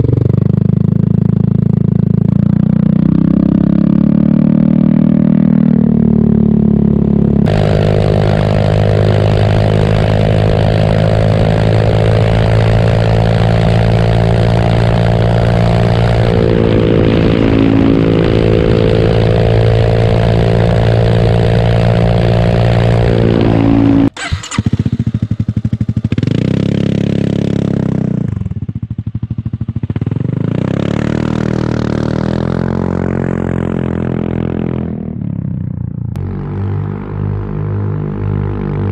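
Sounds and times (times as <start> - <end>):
scooter engine revving: 0.0 - 38.9
scooter engine running: 0.0 - 38.9.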